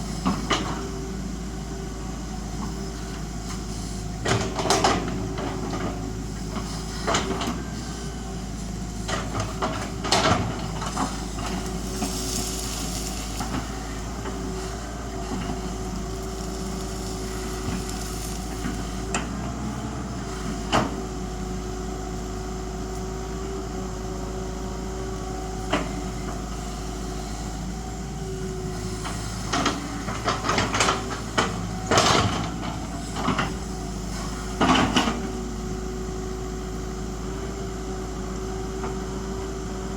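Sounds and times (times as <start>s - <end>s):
excavator diesel engine running: 0.0s - 39.9s
machine clanks and knocks: 4.2s - 7.6s, 9.0s - 11.7s, 29.1s - 33.6s.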